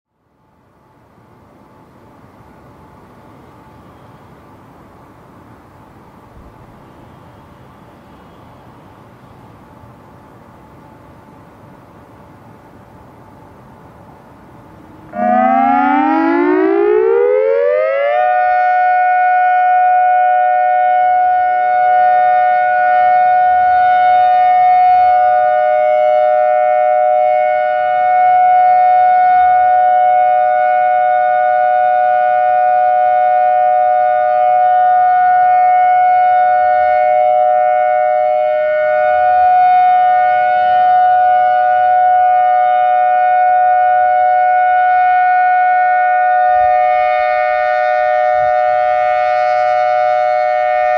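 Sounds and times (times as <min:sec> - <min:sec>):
warning siren multi-tone chord: 0:14.9 - 0:50.9.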